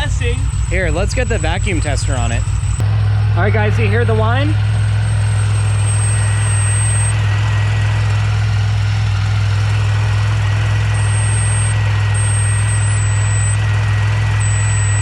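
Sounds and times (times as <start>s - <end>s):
car engine idling: 0.0s - 15.0s
thin high whine: 4.7s - 7.2s, 11.0s - 13.6s, 14.4s - 15.0s
high whistle: 4.8s - 7.2s, 11.0s - 13.6s, 14.4s - 15.0s.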